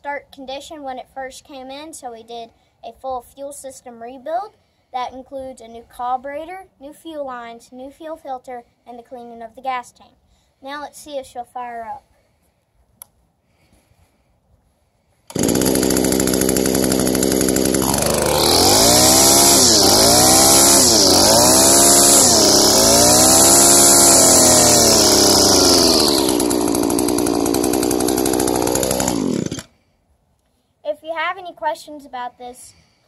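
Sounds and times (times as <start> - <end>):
string trimmer engine revving: 15.3 - 29.7.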